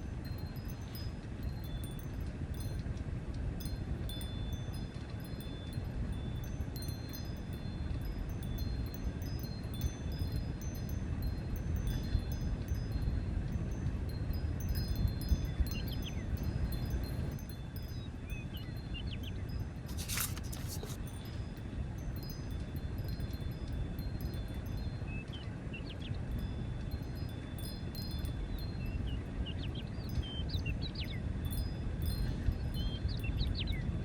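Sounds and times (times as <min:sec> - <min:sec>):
high tinkling notes: 0:03.6 - 0:25.2, 0:26.3 - 0:29.7.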